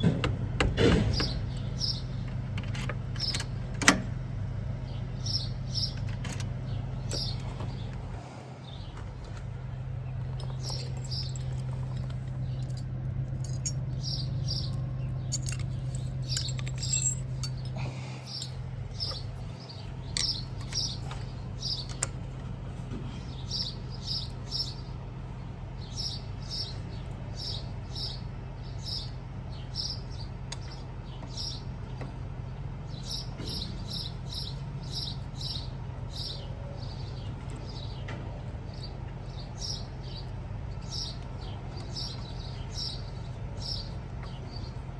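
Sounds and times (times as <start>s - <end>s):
birds chirping: 1.1s - 2.3s, 4.8s - 22.3s, 23.1s - 25.0s, 25.8s - 32.0s, 32.9s - 44.9s
keys clicking in lock: 10.4s - 19.3s.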